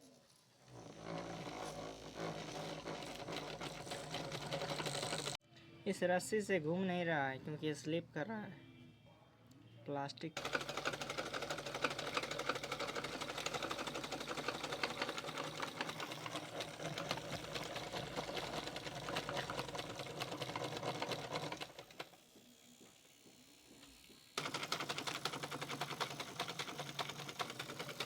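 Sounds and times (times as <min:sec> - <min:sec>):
motor humming: 0:00.6 - 0:05.4
sewing machine needle clatter: 0:00.7 - 0:05.4, 0:10.4 - 0:22.2, 0:24.4 - 0:28.0.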